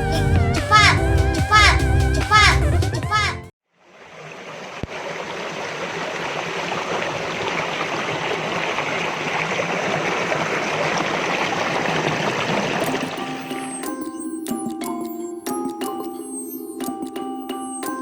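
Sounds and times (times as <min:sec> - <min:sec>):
music with mallet tones: 0:12.8 - 0:18.0.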